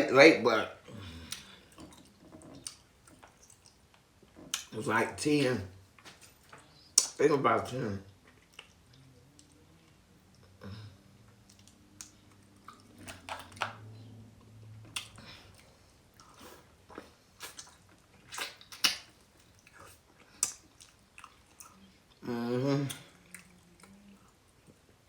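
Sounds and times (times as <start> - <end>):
person chewing food: 0.9 - 4.7, 8.1 - 22.2, 22.8 - 25.0
wet mouth smacks: 17.0 - 19.1, 19.8 - 21.4.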